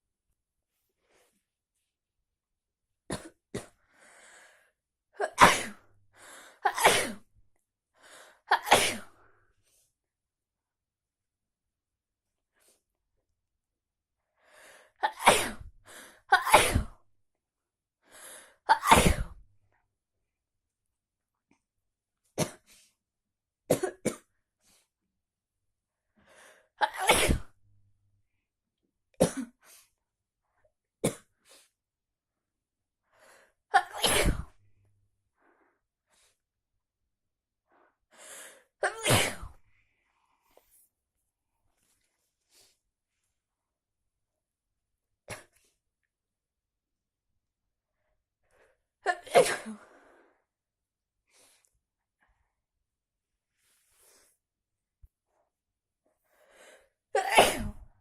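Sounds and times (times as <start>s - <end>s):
person sneezing: 5.2s - 5.8s, 6.7s - 7.2s, 15.0s - 15.7s, 16.3s - 17.0s, 18.7s - 19.4s, 26.8s - 27.5s, 33.8s - 34.6s, 38.8s - 39.6s, 49.1s - 49.9s, 57.2s - 57.9s.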